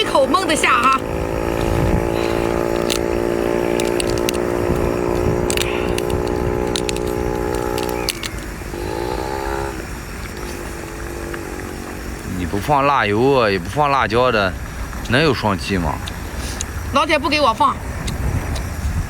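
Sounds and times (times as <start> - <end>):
sharp clicks: 0.0 - 13.0, 13.6 - 19.0
shorter drone rising in pitch: 0.0 - 13.4
engine droning: 0.0 - 19.0.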